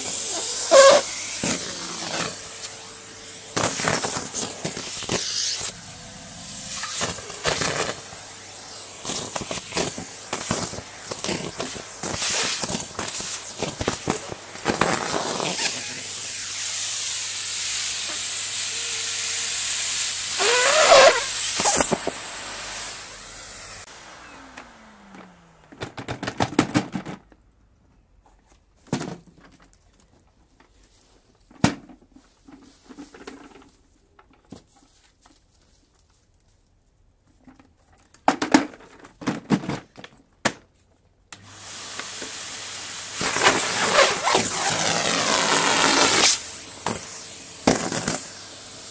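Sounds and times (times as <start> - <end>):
leaves rattling up hose: 0.0 - 16.0, 19.6 - 25.2, 41.5 - 46.5
vacuum cleaner rushing hiss: 0.0 - 25.7, 41.4 - 48.9
motor winding down whine: 18.1 - 25.9.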